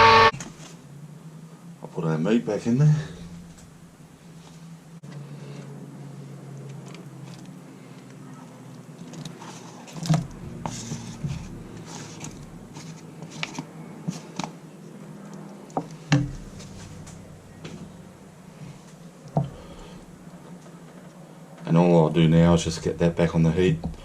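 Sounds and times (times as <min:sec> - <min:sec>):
steady low hum: 0:00.0 - 0:24.0
thick soup being stirred: 0:06.6 - 0:14.5.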